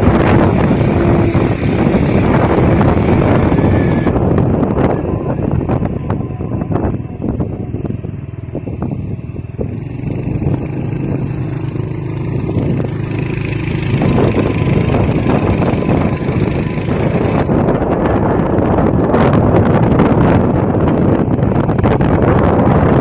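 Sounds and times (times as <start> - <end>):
kite flutes droning: 0.0 - 21.0
wind buffeting microphone: 0.0 - 23.0
high whistling tone: 0.1 - 8.2, 13.0 - 18.6.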